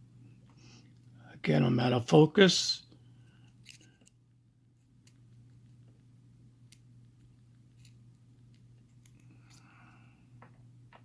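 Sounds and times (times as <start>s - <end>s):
faint low hum: 0.0s - 11.0s
metal padlock parts clicking: 3.6s - 4.2s.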